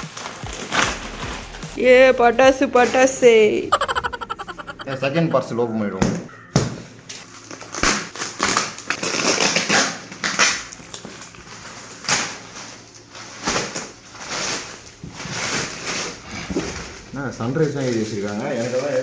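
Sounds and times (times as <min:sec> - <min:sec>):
cardboard ripping and rustling: 0:07.4 - 0:16.4.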